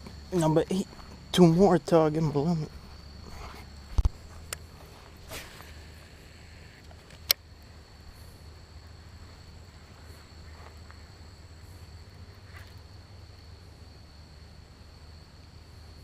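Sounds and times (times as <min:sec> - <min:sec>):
insects chirring: 0:00.0 - 0:16.0
sharp click: 0:06.8 - 0:07.4.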